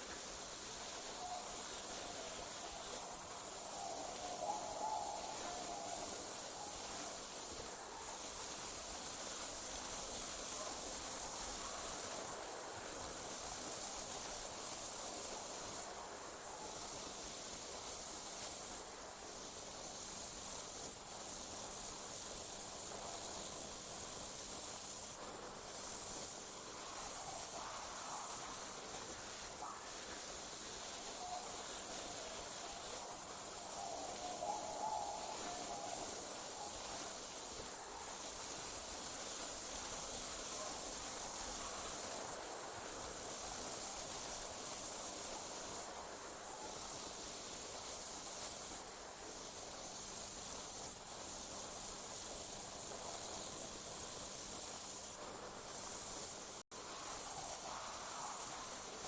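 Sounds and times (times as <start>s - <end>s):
crickets trilling: 0.2s - 8.8s, 16.6s - 45.9s.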